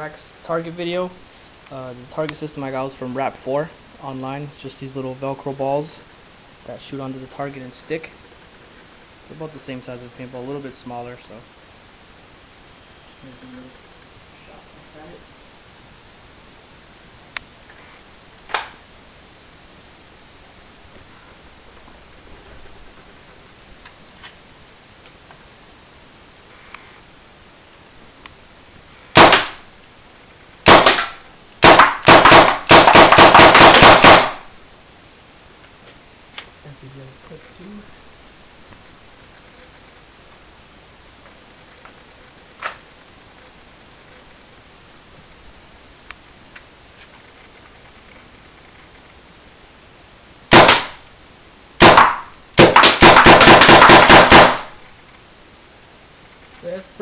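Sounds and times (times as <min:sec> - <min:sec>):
paintball marker shots: 0:29.2 - 0:29.6, 0:30.7 - 0:34.5, 0:50.5 - 0:51.0, 0:51.8 - 0:54.8.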